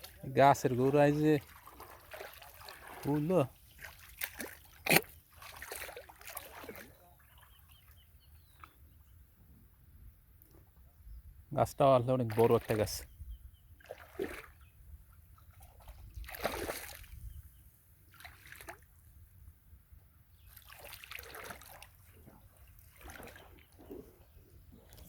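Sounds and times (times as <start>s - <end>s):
river water splashing: 0.0s - 8.7s, 12.2s - 13.1s, 13.8s - 17.2s, 18.0s - 19.0s, 20.4s - 25.0s.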